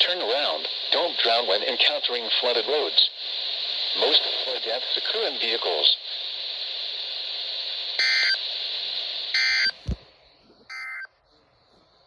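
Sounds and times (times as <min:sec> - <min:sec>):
radio hiss: 0:00.0 - 0:12.0
digital data warble bursts: 0:08.0 - 0:08.4, 0:09.3 - 0:09.8, 0:10.7 - 0:11.1.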